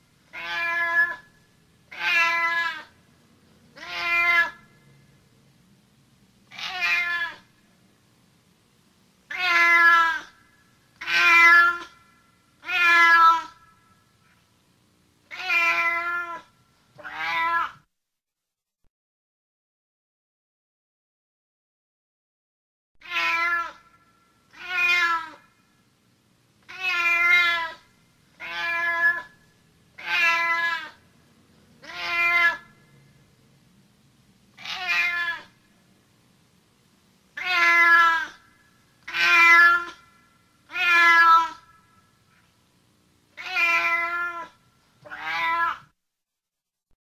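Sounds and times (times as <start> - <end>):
cat meowing: 0.3 - 1.3, 1.9 - 2.9, 3.8 - 4.7, 6.5 - 7.5, 9.3 - 10.4, 11.0 - 12.0, 12.6 - 13.6, 15.3 - 17.9, 23.0 - 23.9, 24.5 - 25.5, 26.6 - 27.8, 28.4 - 29.4, 30.0 - 31.0, 31.8 - 32.8, 34.5 - 35.6, 37.4 - 41.8, 43.4 - 46.0.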